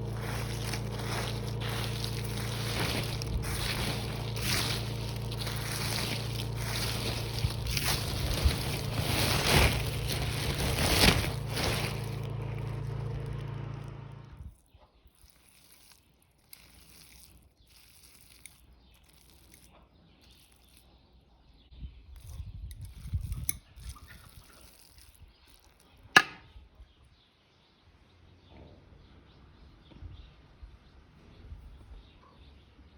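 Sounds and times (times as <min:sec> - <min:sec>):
electric motor machine humming: 0:00.0 - 0:14.5
faint handling sounds: 0:00.0 - 0:14.5, 0:15.1 - 0:21.0, 0:22.2 - 0:26.0.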